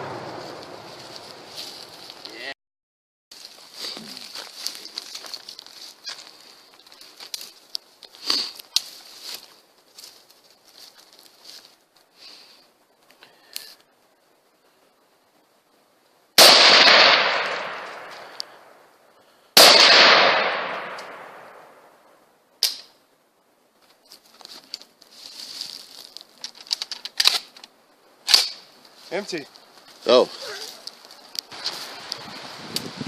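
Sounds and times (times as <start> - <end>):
rifle shots: 0.0 - 0.9, 16.4 - 18.3, 19.6 - 21.8.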